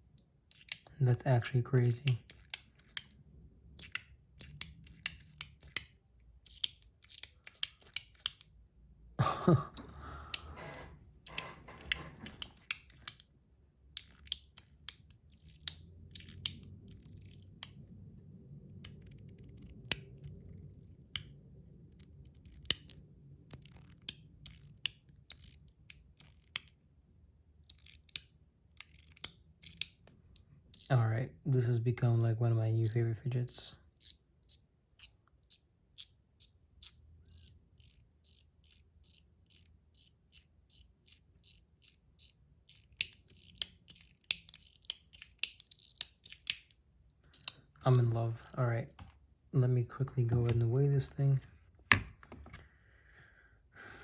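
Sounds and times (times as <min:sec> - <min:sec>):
metal fidget clicking: 0:00.5 - 0:00.9, 0:01.8 - 0:03.2, 0:03.8 - 0:08.5, 0:11.3 - 0:13.3, 0:13.9 - 0:17.8, 0:22.0 - 0:26.7, 0:27.6 - 0:30.0, 0:30.7 - 0:30.9, 0:34.0 - 0:48.2.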